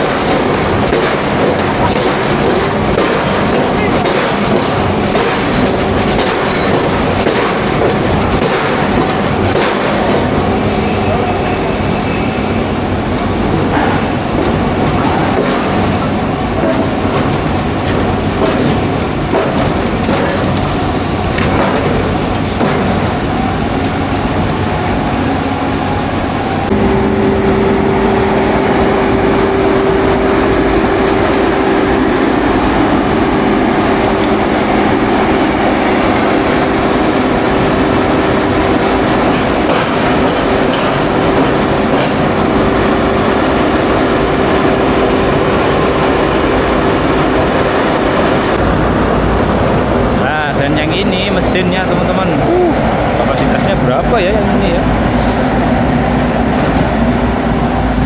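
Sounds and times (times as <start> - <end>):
rattling and clanking: 0.0 - 11.6, 13.0 - 25.4, 37.8 - 56.9
heavy construction machine running: 0.0 - 58.0
steady hum: 0.0 - 58.0.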